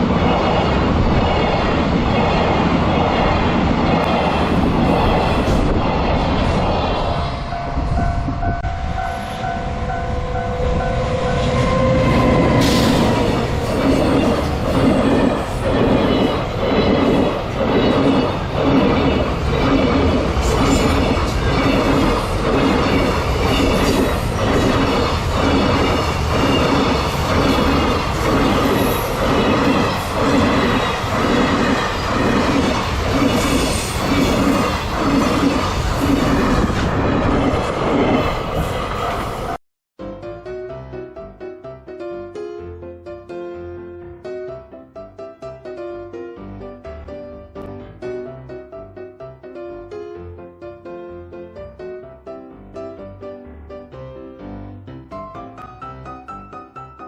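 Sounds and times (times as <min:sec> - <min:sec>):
electric locomotive tones: 0:06.9 - 0:37.0.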